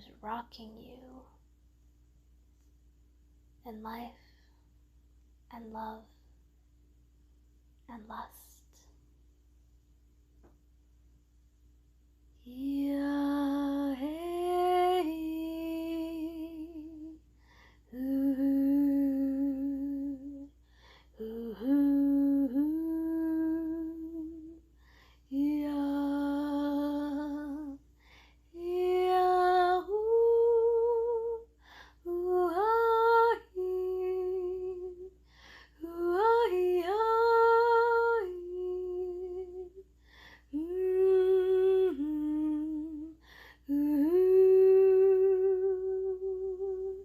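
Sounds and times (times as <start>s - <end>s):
breath: 17.4s - 17.9s, 20.6s - 21.2s, 24.8s - 25.3s, 28.0s - 28.5s, 31.6s - 32.0s, 35.2s - 35.8s, 40.0s - 40.5s, 43.2s - 43.6s.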